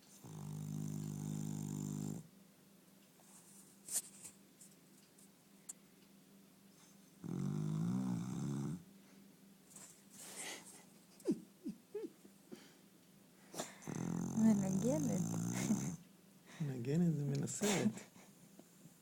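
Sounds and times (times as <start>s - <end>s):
dog snoring: 0.2s - 2.3s, 7.2s - 8.9s, 13.6s - 16.0s.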